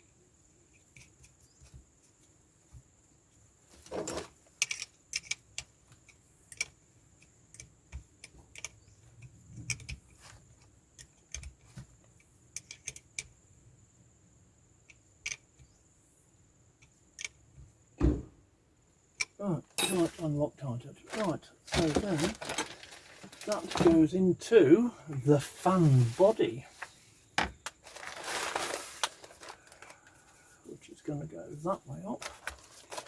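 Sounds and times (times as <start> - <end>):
parts clattering: 3.7 - 6.8, 19.2 - 20.4, 21.1 - 30.4, 32.1 - 33.0
small parts clicking: 4.6 - 13.4, 14.8 - 15.6, 16.8 - 17.4.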